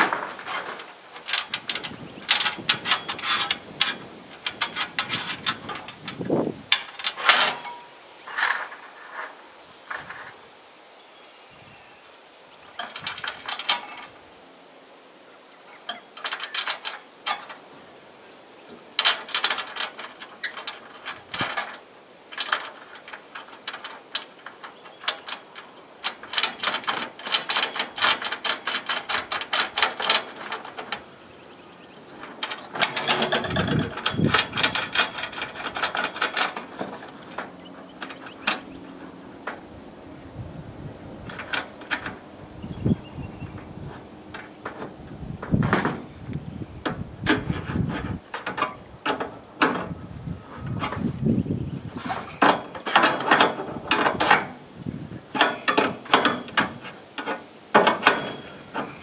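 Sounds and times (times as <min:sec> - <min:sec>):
metal tools clicking and clattering: 0:00.0 - 0:10.3, 0:12.7 - 0:14.3, 0:15.8 - 0:17.6, 0:19.0 - 0:31.2, 0:32.0 - 0:39.7, 0:41.2 - 0:42.2, 0:52.0 - 0:54.6, 0:55.3 - 0:59.0.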